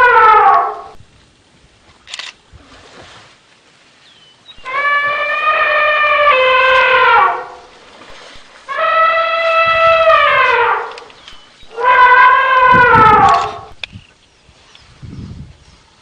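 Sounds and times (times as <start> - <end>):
elephant trumpeting: 0.0 - 1.0, 4.6 - 13.8.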